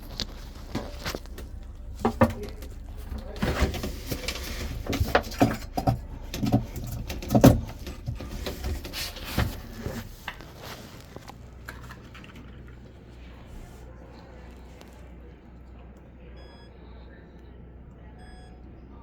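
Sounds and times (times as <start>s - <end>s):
irregular knocks and clatters: 0.0s - 12.5s
faint low hum: 0.0s - 19.0s.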